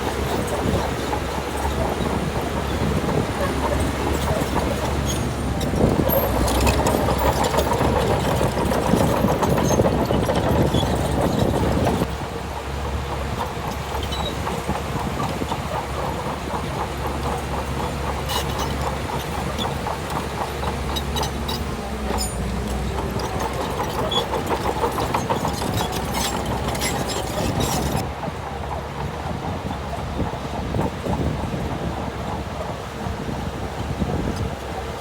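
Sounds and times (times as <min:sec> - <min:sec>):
bulldozer diesel engine running: 0:00.0 - 0:35.0
rhythmic metallic clatter: 0:12.8 - 0:31.8.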